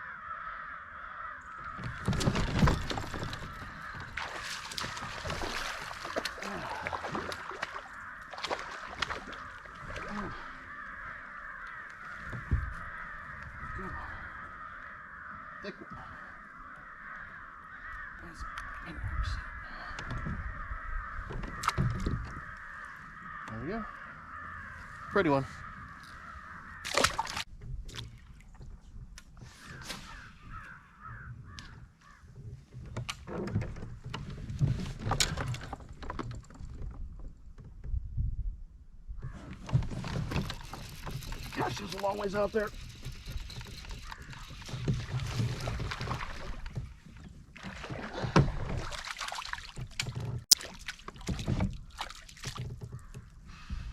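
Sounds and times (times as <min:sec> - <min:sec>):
bird calling: 0:00.0 - 0:27.4, 0:29.5 - 0:32.4, 0:40.3 - 0:46.6
crow-like caws: 0:00.0 - 0:27.4, 0:29.6 - 0:32.4, 0:43.2 - 0:45.0, 0:52.8 - 0:53.9
knocks and rattles on kayak: 0:01.5 - 0:53.9.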